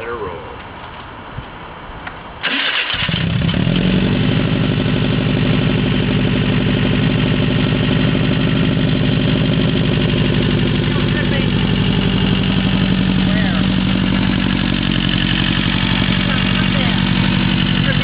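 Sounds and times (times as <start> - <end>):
car engine starting and idling: 2.4 - 18.0.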